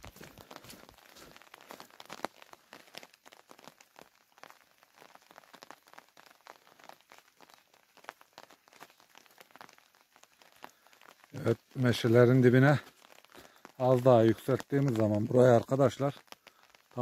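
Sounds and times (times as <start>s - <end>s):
faint raindrops pattering: 0.0s - 17.0s.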